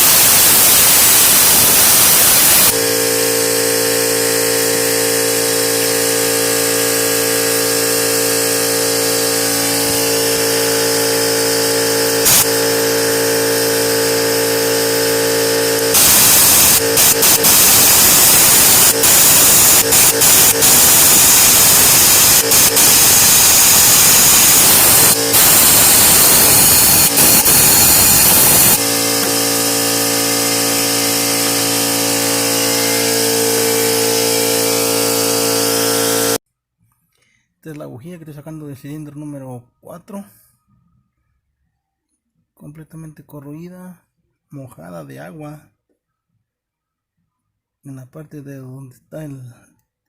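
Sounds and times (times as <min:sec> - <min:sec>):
steady hum: 0:00.0 - 0:36.4
tool hissing: 0:00.0 - 0:36.4.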